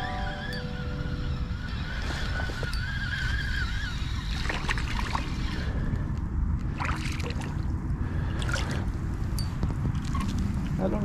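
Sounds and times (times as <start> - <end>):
water sloshing and trickling: 1.9 - 6.0, 6.6 - 10.8.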